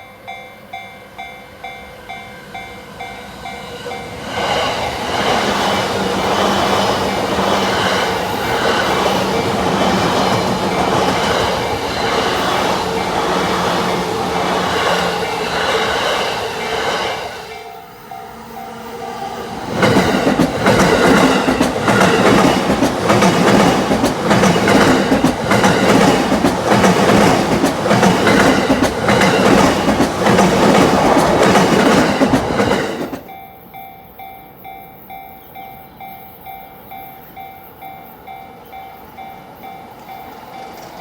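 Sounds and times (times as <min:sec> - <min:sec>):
train wheels clattering over rail joints: 0:19.7 - 0:33.2.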